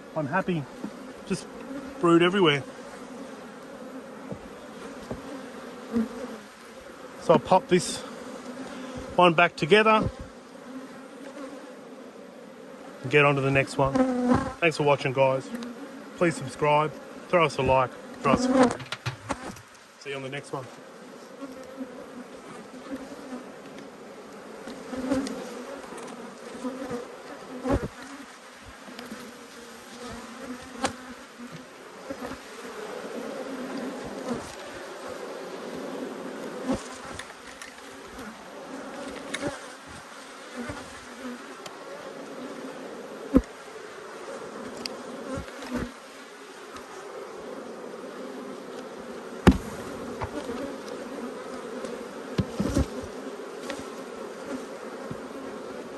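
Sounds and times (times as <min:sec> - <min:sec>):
honey bees buzzing: 0:00.0 - 0:55.9
sharp knocks: 0:18.6 - 0:19.6, 0:49.4 - 0:50.4.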